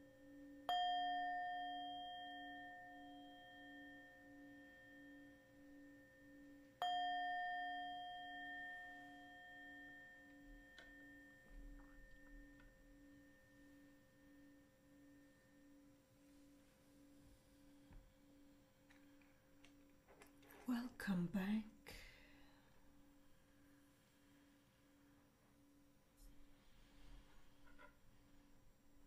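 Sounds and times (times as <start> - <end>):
bowl struck: 0.0 - 17.1
singing bowls ringing: 0.0 - 20.9.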